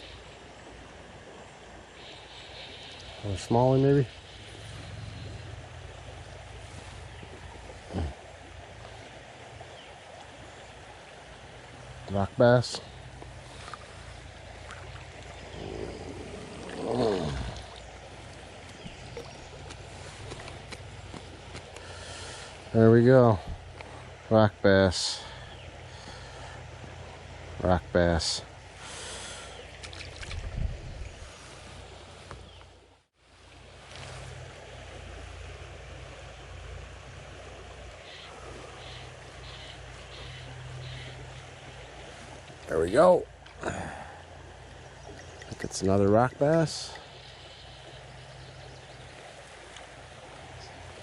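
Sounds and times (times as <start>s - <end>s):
water swish: 0.0s - 27.6s, 28.4s - 51.0s
creek water running: 0.0s - 51.0s
wind rumbling on microphone: 30.1s - 32.6s.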